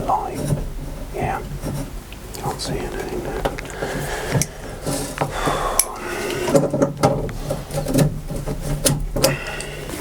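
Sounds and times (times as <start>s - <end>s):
tools and parts handled: 3.4s - 10.0s.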